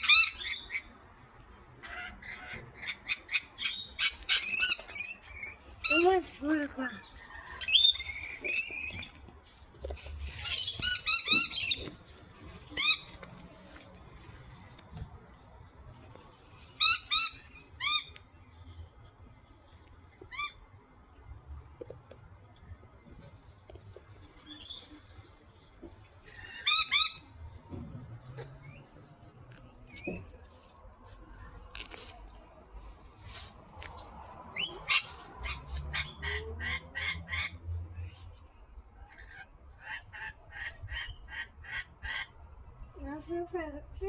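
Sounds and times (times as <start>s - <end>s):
parrot squawking: 34.6s - 37.6s.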